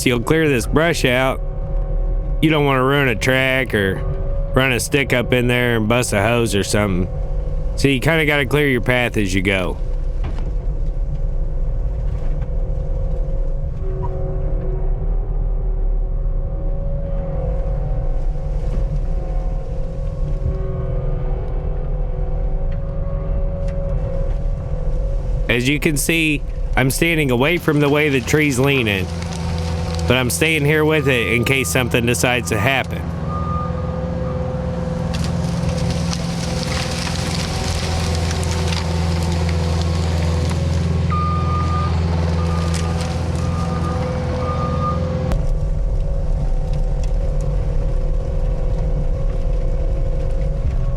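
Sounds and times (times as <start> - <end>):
diesel engine running: 0.0 - 13.9, 16.6 - 50.9
backup alarm beep: 30.2 - 34.5, 41.1 - 42.7, 43.6 - 45.1.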